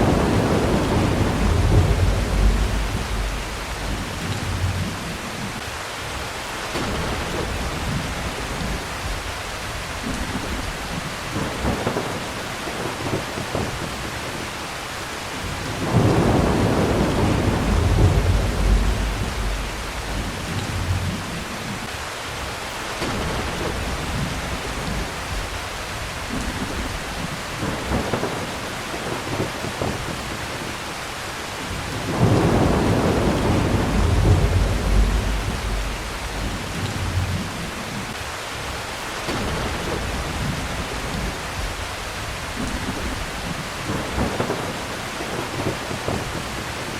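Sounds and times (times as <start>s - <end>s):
thunder rumbling: 0.0s - 5.6s, 6.7s - 14.5s, 15.4s - 21.9s, 23.0s - 30.9s, 31.7s - 38.2s, 39.3s - 46.9s
heavy rain falling: 0.0s - 46.9s.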